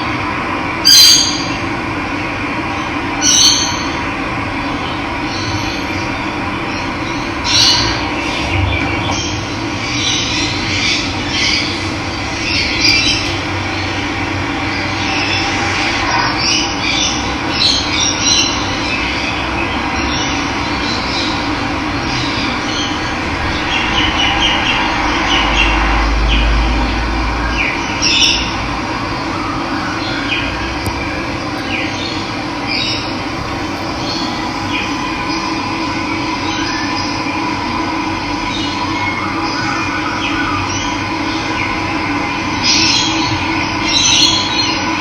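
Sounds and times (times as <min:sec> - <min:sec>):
birds chirping and calling: 0:03.2 - 0:04.0, 0:05.3 - 0:14.0, 0:31.6 - 0:37.2
running water rushing: 0:33.2 - 0:36.4.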